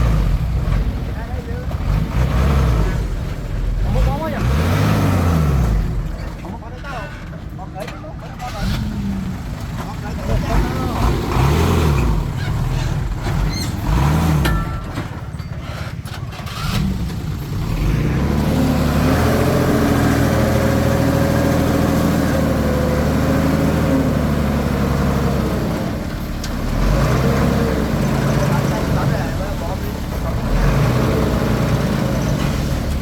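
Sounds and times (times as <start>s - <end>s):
bulldozer diesel engine running: 8.9s - 33.0s.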